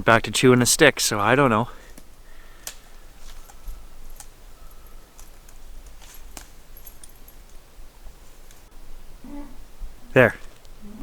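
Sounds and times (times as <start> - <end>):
sharp clicks and snaps: 1.9 - 4.4.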